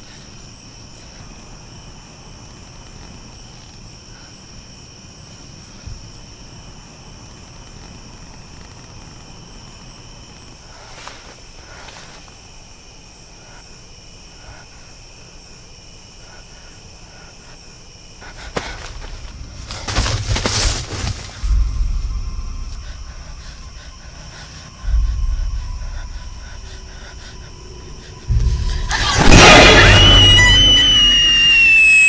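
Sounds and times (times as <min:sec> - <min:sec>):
crickets chirping: 0:00.0 - 0:32.0
rustling: 0:18.2 - 0:25.5.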